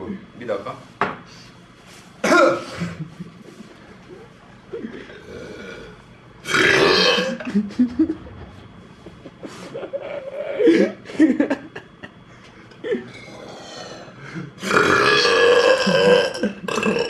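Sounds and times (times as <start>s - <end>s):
person belching loudly: 5.0s - 7.5s, 13.2s - 17.0s.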